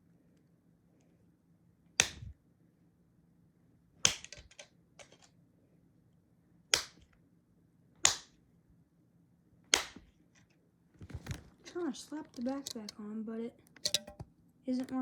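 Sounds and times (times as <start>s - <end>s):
small plastic clicks: 4.0s - 5.3s, 12.3s - 13.0s, 13.7s - 14.2s
phone cover snapping: 13.8s - 14.2s.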